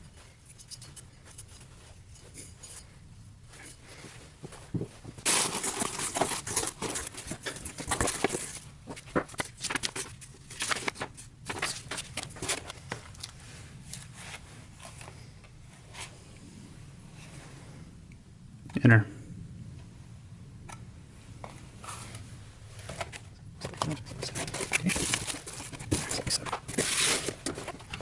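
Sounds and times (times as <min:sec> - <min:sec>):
packaging rustling and crinkling: 0:04.7 - 0:15.1, 0:22.8 - 0:28.0.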